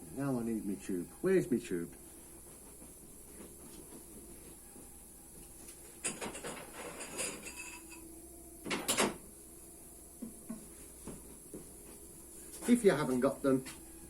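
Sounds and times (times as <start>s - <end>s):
tools knocking and rustling: 6.0s - 7.9s
tools clattering: 6.0s - 8.0s.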